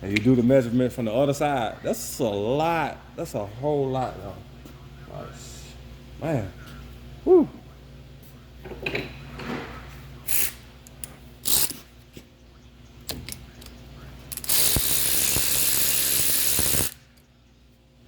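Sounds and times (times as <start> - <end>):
sharp metallic clicks: 13.0 - 17.3
loud steady rasping hiss: 14.3 - 17.1.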